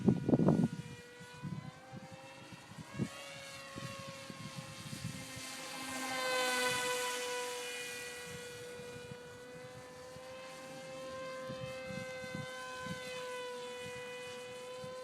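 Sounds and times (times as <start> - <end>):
wind buffeting microphone: 0.0 - 7.0, 11.3 - 15.0
model plane propeller motor whining: 0.0 - 15.0.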